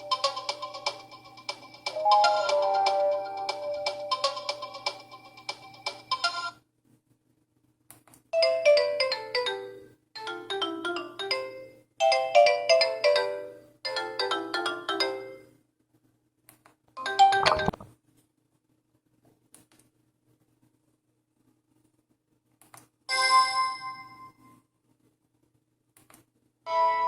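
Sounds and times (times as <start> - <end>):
phone ringtone melody: 2.0 - 4.9, 8.4 - 15.4, 17.0 - 17.8.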